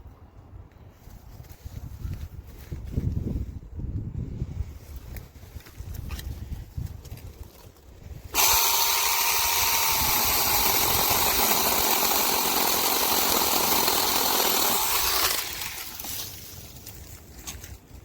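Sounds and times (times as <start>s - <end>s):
mini chainsaw whine: 8.3s - 16.2s.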